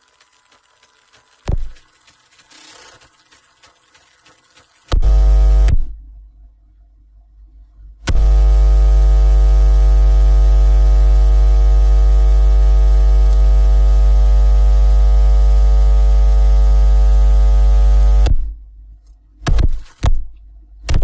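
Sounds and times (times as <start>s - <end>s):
loud electrical buzz: 4.9s - 6.0s, 8.0s - 18.4s
deep hum: 5.0s - 18.7s.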